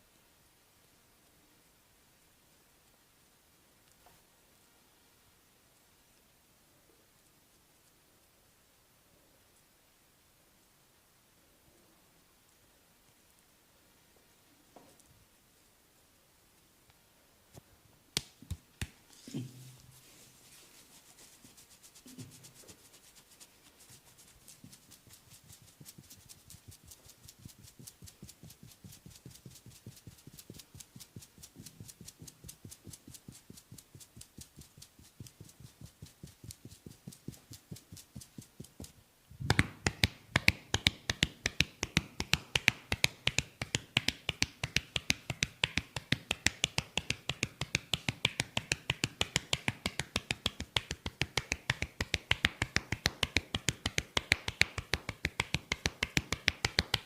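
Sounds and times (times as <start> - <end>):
percussive massage tapping: 18.2 - 19.0, 24.2 - 57.0.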